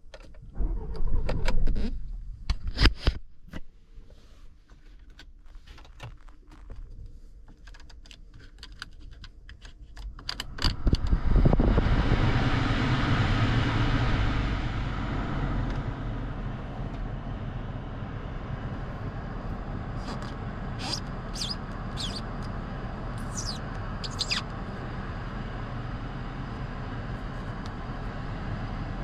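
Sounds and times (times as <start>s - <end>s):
loud mechanical cranking noise: 20.8s - 22.2s.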